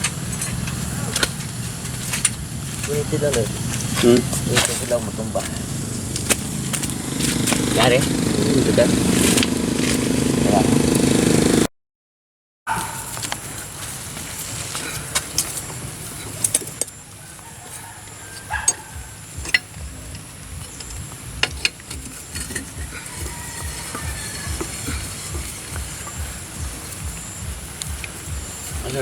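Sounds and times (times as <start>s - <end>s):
steady low rumble: 18.9s - 29.0s.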